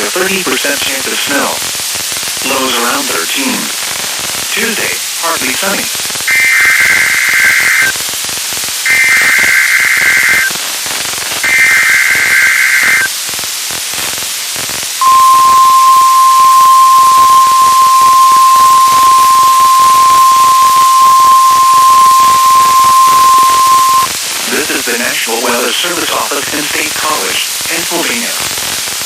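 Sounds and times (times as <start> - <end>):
radio static hiss: 0.0 - 29.0
warbling digital data squawk: 6.3 - 8.0, 8.9 - 10.5, 11.4 - 13.1, 15.0 - 24.1
steady warning alarm tone: 15.0 - 24.1.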